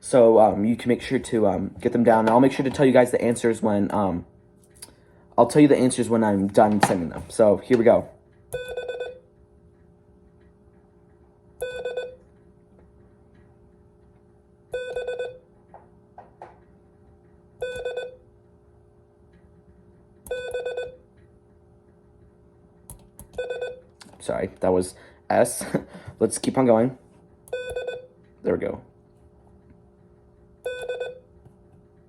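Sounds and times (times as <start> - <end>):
morse code beeps: 8.6 - 9.2, 11.6 - 12.2, 14.8 - 15.4, 17.6 - 18.2, 20.3 - 21.0, 23.4 - 23.8, 27.5 - 28.1, 30.6 - 31.3.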